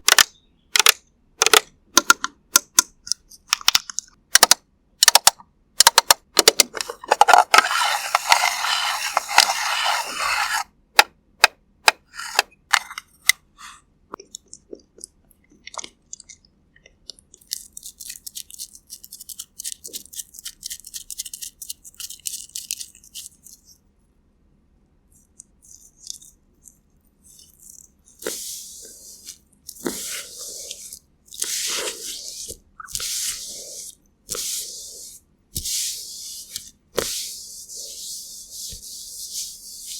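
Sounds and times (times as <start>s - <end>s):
fine scratching: 6.8s - 10.7s, 12.1s - 13.0s, 28.2s - 39.9s
brush strokes: 7.1s - 10.7s, 12.1s - 12.9s, 27.3s - 39.9s.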